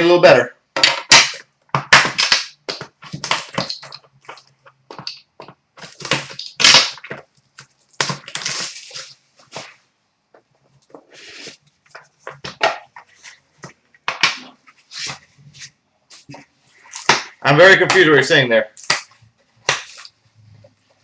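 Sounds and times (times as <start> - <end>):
packaging crinkling and tearing: 5.8 - 9.2.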